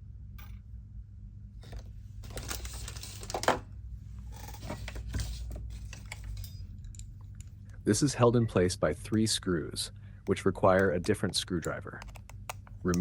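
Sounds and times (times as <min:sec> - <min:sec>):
steady low hum: 0:00.0 - 0:13.0
small tools clicking and scraping: 0:04.3 - 0:07.8.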